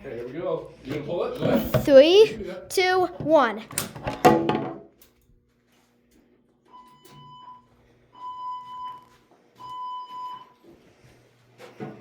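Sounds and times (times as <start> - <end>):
fire alarm electronic tone: 6.7 - 10.6.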